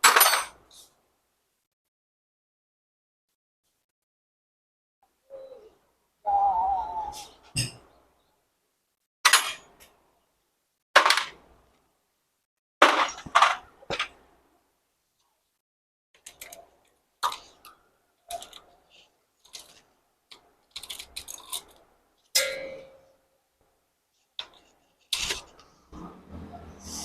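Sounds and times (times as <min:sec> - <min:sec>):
ringing metal clank: 0:22.4 - 0:23.2.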